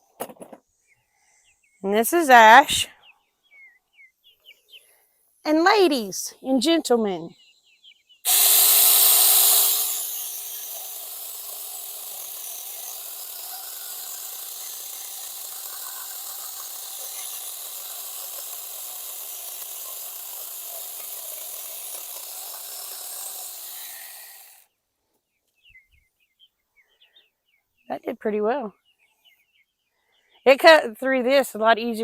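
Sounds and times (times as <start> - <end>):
electric chainsaw cutting wood: 8.3 - 24.7.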